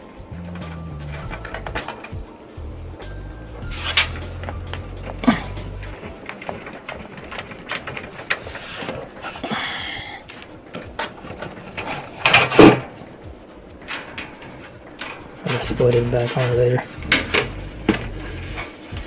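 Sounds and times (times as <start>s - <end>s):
panel scraping slide: 3.6s - 9.4s.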